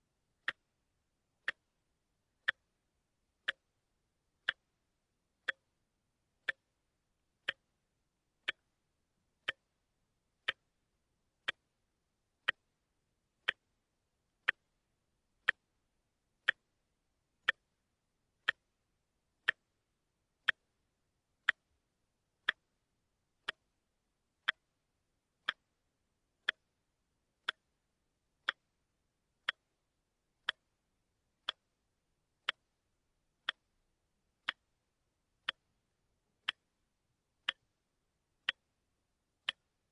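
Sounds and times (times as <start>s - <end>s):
watch ticking: 0.4s - 13.8s, 14.4s - 15.8s, 16.4s - 21.8s, 22.4s - 22.8s, 23.4s - 24.8s, 25.4s - 39.9s.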